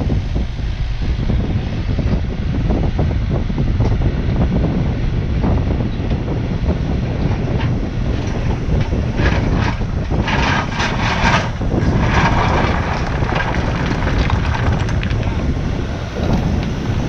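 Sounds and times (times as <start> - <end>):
excavator diesel engine running: 0.0 - 17.0
rock scraping against bucket: 7.3 - 15.6.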